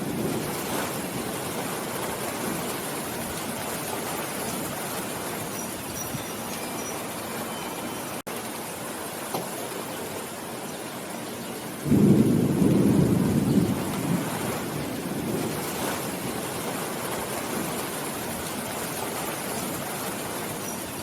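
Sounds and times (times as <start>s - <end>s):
thunder rumbling: 0.0s - 5.8s, 11.8s - 20.6s
steady rain: 0.0s - 21.0s.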